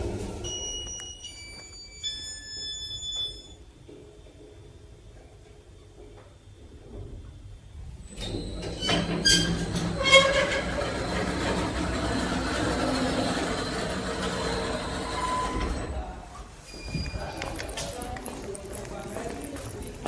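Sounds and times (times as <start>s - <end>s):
lift travelling rumble and rattle: 7.9s - 18.1s
lift clanking: 8.1s - 16.2s.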